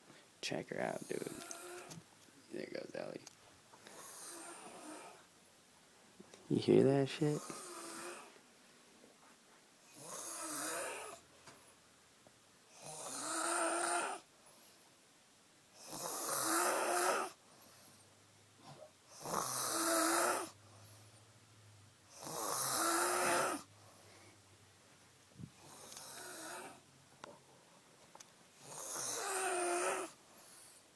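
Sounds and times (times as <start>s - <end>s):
woman snoring loudly: 7.4s - 8.3s, 10.0s - 11.2s, 12.8s - 14.3s, 15.8s - 17.4s, 19.2s - 20.6s, 22.2s - 23.7s, 25.7s - 26.8s, 28.6s - 30.2s.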